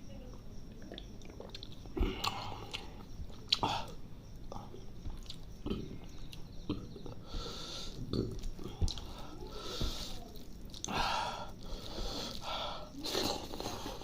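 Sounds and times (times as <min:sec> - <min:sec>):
wet chewing mouth clicks: 0:00.8 - 0:04.0, 0:05.1 - 0:07.2, 0:08.1 - 0:09.1.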